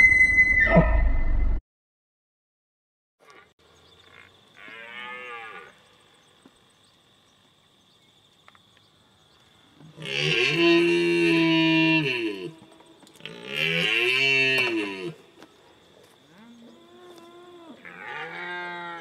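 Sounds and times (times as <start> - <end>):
cow mooing: 10.0 - 12.6, 16.4 - 19.0.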